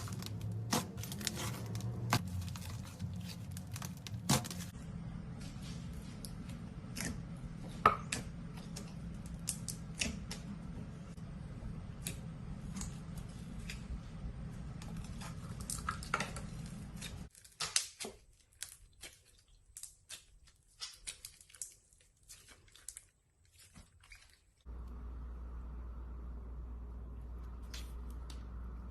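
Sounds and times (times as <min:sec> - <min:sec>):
low steady hum: 0:00.0 - 0:17.3, 0:24.7 - 0:28.9.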